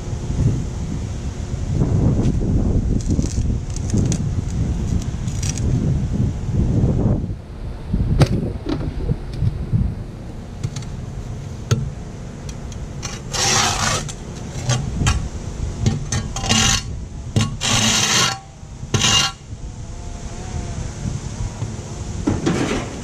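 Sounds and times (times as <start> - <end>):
spade scraping into soil: 13.0 - 15.2, 15.8 - 19.4.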